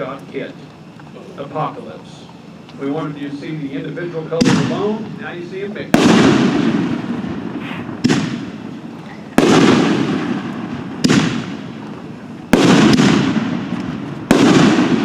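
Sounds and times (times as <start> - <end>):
firework shell bangs echoing: 4.4 - 5.3, 5.9 - 8.8, 9.4 - 15.0.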